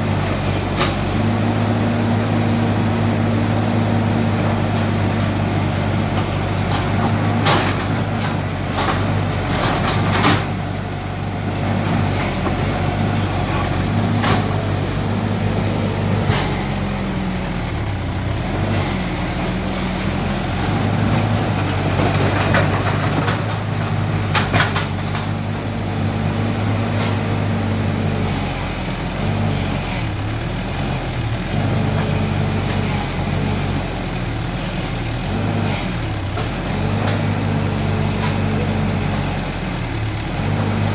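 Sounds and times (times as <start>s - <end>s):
excavator engine running: 0.0s - 40.9s
metal clanks and knocks: 4.3s - 19.0s, 20.0s - 25.6s.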